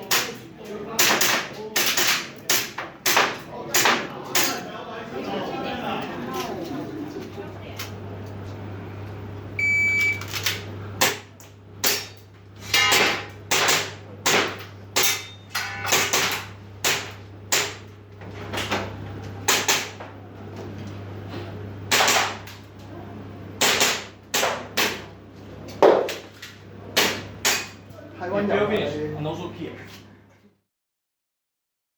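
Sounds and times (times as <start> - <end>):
shot timer beep: 9.6 - 10.3
airsoft pistol shots: 12.9 - 15.1, 21.9 - 22.5, 23.6 - 25.0.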